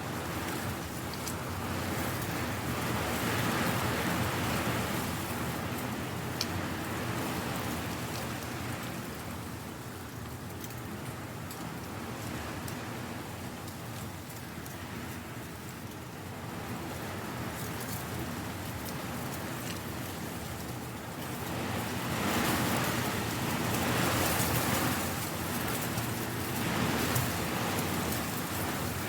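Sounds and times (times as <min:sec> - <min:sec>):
wind blowing dry leaves: 0:00.0 - 0:29.0
faint crisp ticks: 0:05.8 - 0:06.6, 0:10.2 - 0:12.8, 0:18.7 - 0:21.3.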